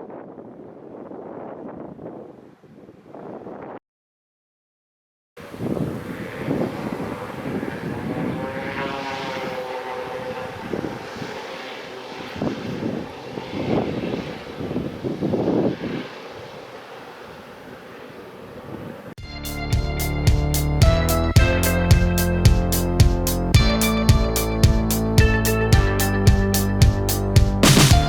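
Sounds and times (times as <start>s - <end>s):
passing aircraft engines: 5.4s - 19.2s.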